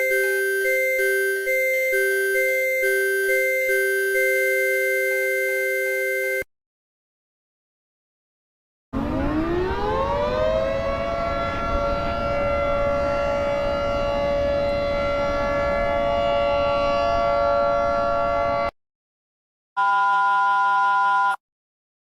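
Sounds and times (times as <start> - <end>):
outdoor warning siren: 0.0 - 6.5, 9.0 - 18.8.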